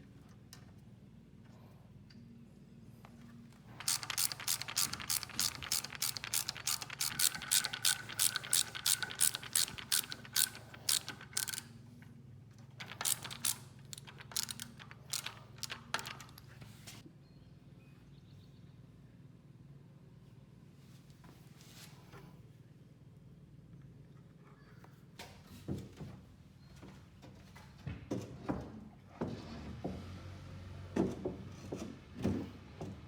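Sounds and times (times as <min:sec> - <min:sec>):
metal ratchet clicking: 0:03.7 - 0:11.7, 0:12.8 - 0:16.5.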